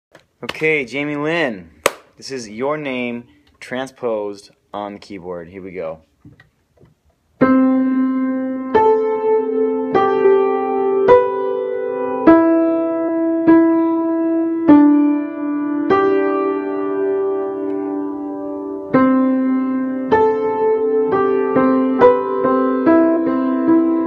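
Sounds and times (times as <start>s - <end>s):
piano single notes: 7.4s - 24.0s.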